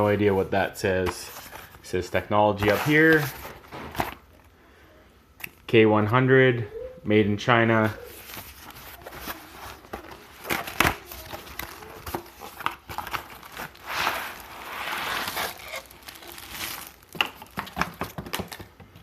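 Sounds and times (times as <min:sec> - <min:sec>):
packaging crinkling and rustling: 0:08.1 - 0:19.0.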